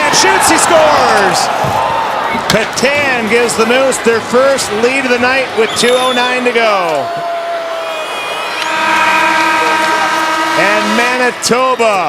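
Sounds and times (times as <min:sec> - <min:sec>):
arena horn long steady note: 0:08.3 - 0:12.0.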